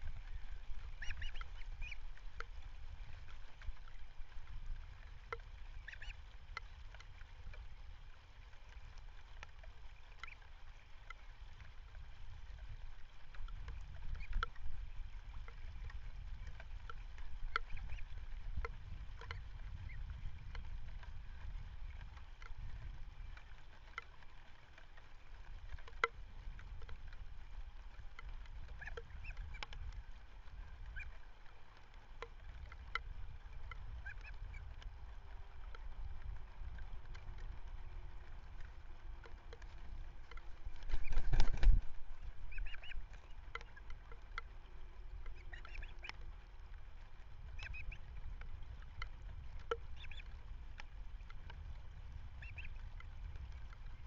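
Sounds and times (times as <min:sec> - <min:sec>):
wind rumbling on microphone: 0:00.0 - 0:54.0
bird calls and chirps: 0:00.2 - 0:02.1, 0:05.7 - 0:06.2, 0:10.2 - 0:10.5, 0:17.5 - 0:18.2, 0:40.8 - 0:41.6, 0:42.4 - 0:43.9, 0:45.3 - 0:46.2, 0:47.5 - 0:48.0, 0:49.9 - 0:50.3, 0:52.4 - 0:52.8.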